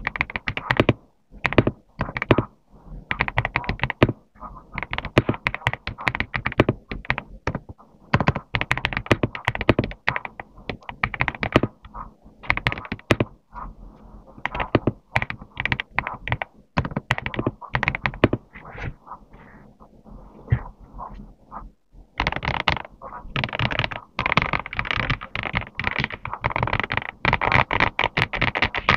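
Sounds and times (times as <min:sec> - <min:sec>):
mechanical keyboard typing: 0:00.0 - 0:02.5, 0:03.1 - 0:13.4, 0:14.4 - 0:18.5, 0:22.1 - 0:28.9.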